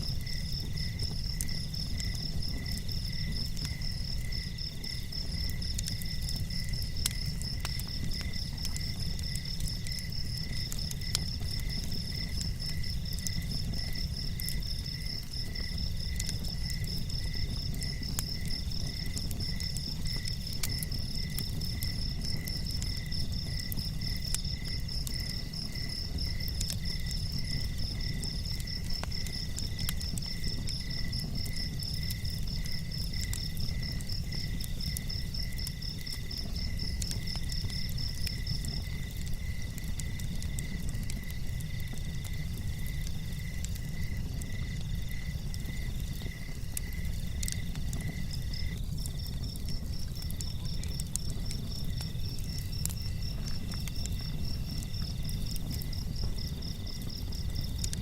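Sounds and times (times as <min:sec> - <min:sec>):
crickets chirping: 0:00.0 - 0:58.0.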